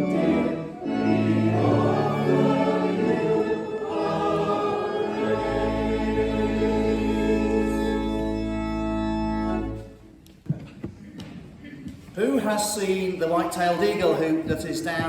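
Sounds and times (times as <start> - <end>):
voices singing a hymn: 0.0 - 9.8
organ chord: 0.0 - 9.9.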